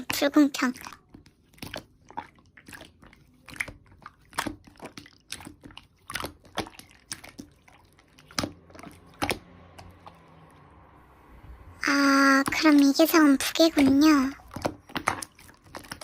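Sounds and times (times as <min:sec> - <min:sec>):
slime squished by hand: 0:00.0 - 0:10.4.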